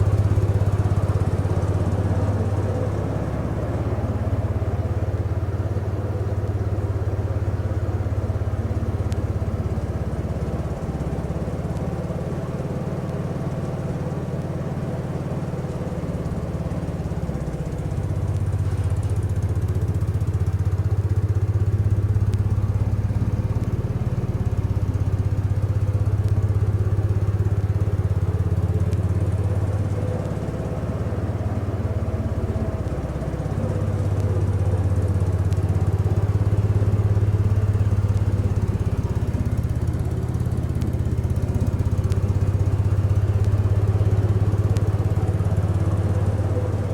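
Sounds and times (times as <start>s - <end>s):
garden tractor engine running: 0.0s - 46.9s.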